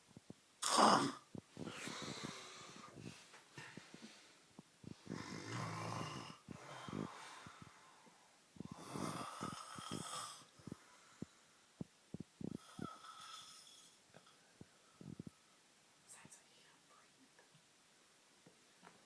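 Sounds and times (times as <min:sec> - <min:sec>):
man snoring: 0:00.6 - 0:02.9, 0:05.1 - 0:07.1, 0:08.7 - 0:10.5.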